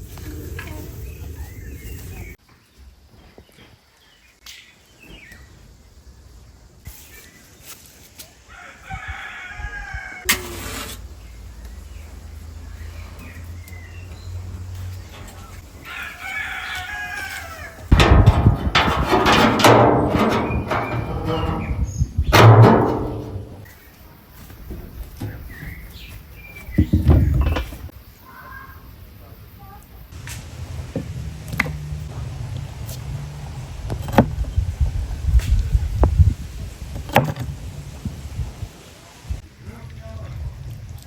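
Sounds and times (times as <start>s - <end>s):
rooster crowing: 8.5s - 10.3s, 15.7s - 17.9s.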